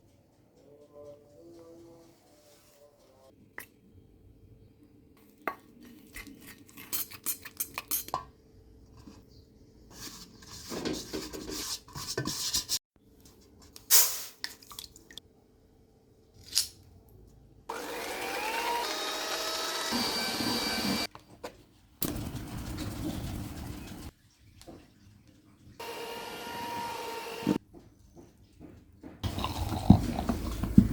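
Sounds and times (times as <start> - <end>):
small electric motor running: 17.7 - 21.1, 25.8 - 27.6.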